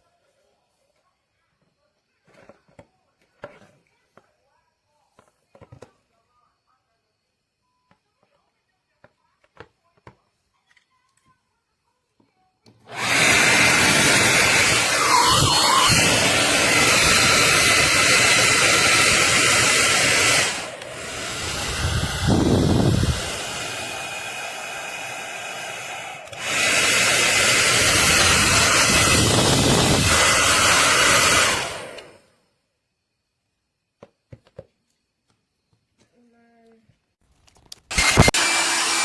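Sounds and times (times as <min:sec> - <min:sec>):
hair dryer running: 0:12.9 - 0:32.2, 0:37.9 - 0:39.0.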